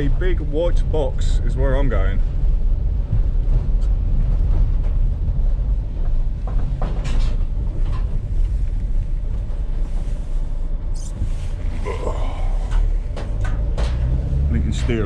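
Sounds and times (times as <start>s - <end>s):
van engine and road rumble: 0.0s - 15.0s
short clunks and rattles: 3.0s - 8.5s, 12.6s - 15.0s.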